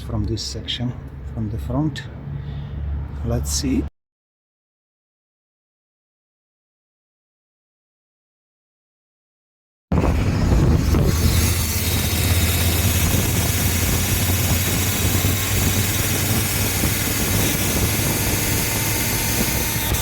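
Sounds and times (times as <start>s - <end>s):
motorcycle engine running: 10.0s - 20.0s
drive chain noise: 10.9s - 20.0s.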